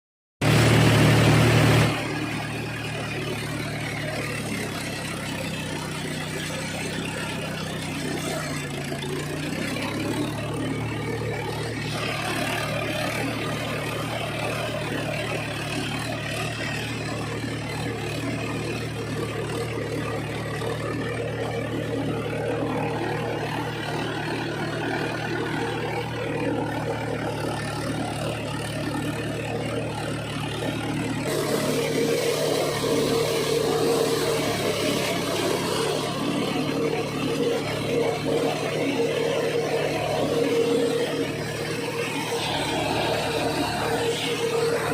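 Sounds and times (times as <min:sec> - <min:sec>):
tractor diesel engine running: 0:00.4 - 0:44.9.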